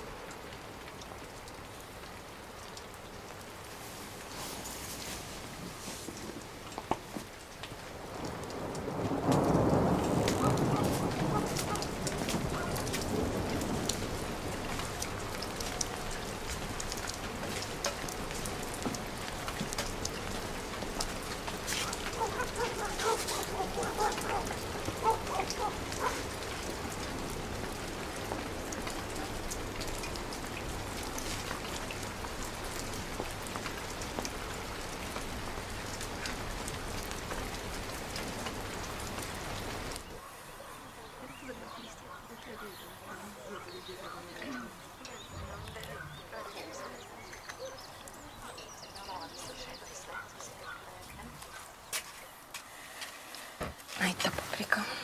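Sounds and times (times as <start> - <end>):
rain falling: 0.0 - 55.0
raindrops ticking: 0.0 - 55.0
low rumble of thunder: 7.9 - 40.0.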